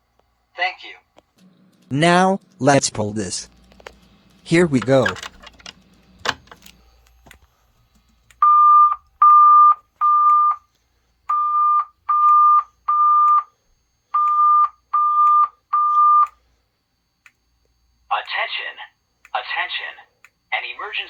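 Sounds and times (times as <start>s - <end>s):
pull station click: 3.5s - 7.4s.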